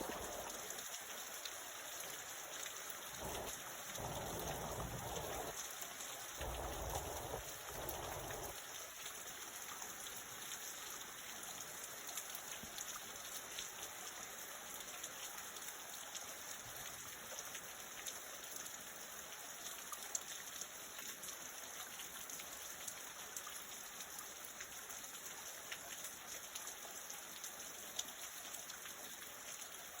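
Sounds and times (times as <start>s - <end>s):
steady rain falling: 0.0s - 30.0s
low rumbles: 3.2s - 5.5s.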